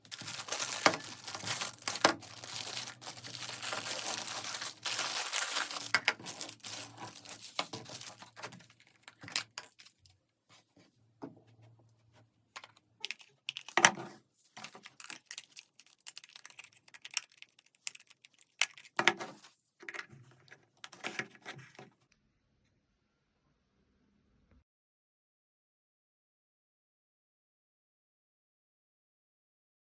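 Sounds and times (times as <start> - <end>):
packaging tearing and crinkling: 0.0 - 10.0, 14.6 - 19.0
clicks taps and rustles: 0.0 - 10.2.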